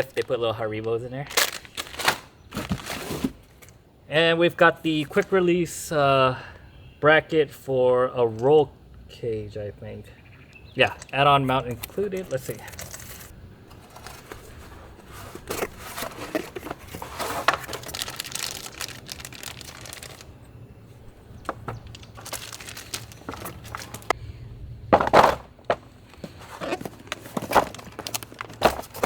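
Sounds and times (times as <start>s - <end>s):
packaging crinkling and rustling: 0.0s - 3.7s, 11.8s - 24.2s, 26.1s - 29.0s.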